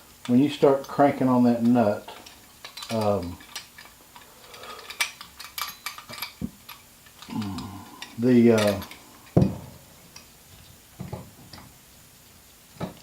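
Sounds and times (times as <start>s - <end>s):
metal parts and tool clinking: 0.8s - 10.3s
person vocal sound: 7.3s - 8.2s.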